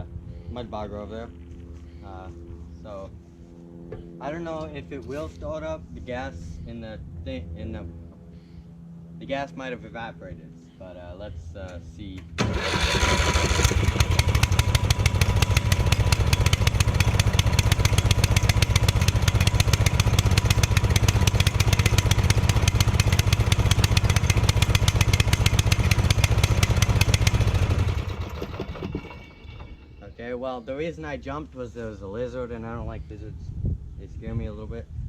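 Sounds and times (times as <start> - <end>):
lawn mower engine running fast: 12.3 - 29.4.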